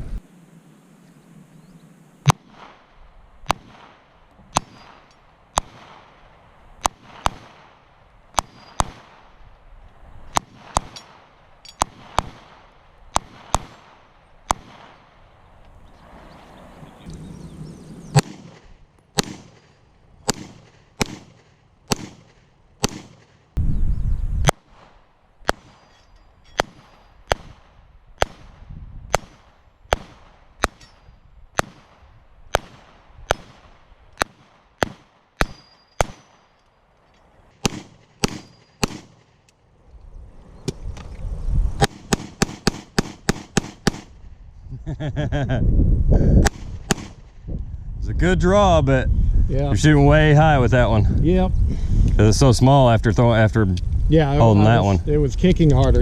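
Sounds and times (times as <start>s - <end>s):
low rumble: 0.0s - 3.4s
handgun shots with echo: 3.5s - 6.2s, 10.3s - 15.0s, 18.1s - 19.7s, 20.3s - 23.3s, 32.5s - 36.5s, 37.6s - 39.3s, 41.8s - 44.1s, 46.4s - 47.2s.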